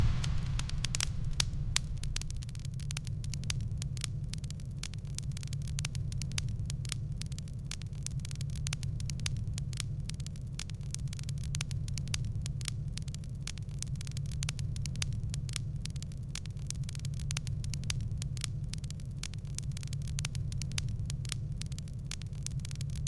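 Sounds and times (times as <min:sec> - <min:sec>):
low rumble: 0:00.0 - 0:04.1
fire crackling and popping: 0:00.0 - 0:23.0.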